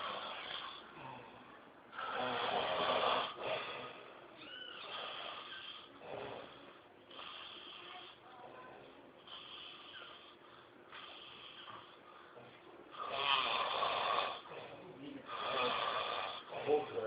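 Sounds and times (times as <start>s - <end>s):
person snoring: 2.0s - 4.1s, 12.9s - 17.0s.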